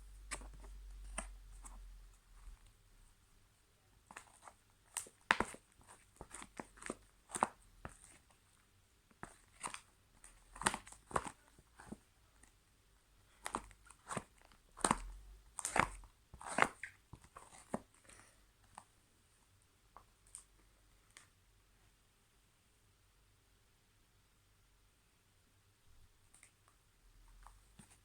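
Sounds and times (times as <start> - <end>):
sticky slime squelching: 9.2 - 12.0, 13.3 - 17.8.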